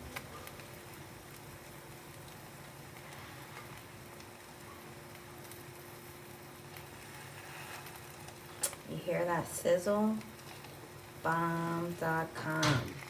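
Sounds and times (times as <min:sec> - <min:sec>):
egg sizzling and crackling: 0:00.0 - 0:13.0.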